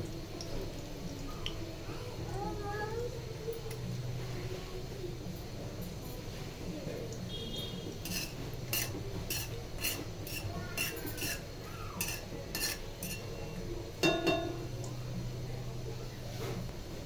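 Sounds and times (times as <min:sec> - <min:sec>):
metal spoon clinking on pan: 0:08.0 - 0:13.4, 0:14.0 - 0:14.7.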